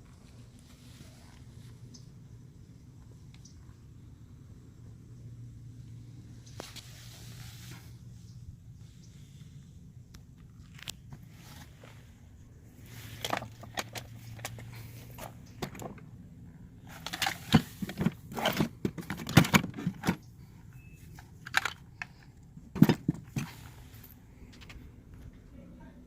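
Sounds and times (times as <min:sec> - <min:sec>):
tools clattering into plastic box: 0:16.9 - 0:20.2, 0:21.4 - 0:22.2.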